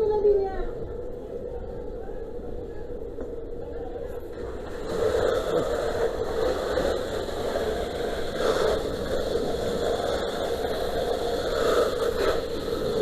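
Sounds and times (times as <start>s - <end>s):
engine hum with rushing hiss: 4.4s - 13.0s.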